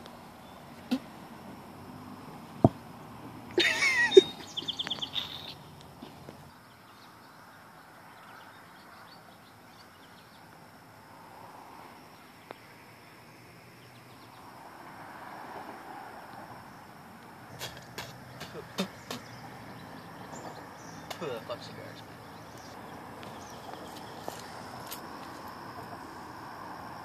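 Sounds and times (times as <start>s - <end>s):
quick bird chirps: 4.0s - 5.7s, 17.5s - 24.6s.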